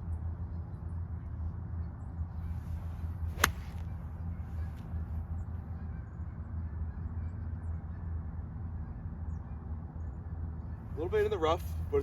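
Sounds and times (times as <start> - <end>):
golf club striking ball: 3.4 - 3.9.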